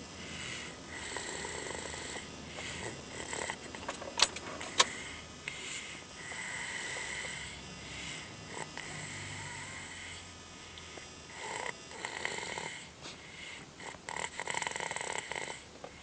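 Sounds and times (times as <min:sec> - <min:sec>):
person snoring: 0:00.0 - 0:03.8, 0:04.6 - 0:16.0.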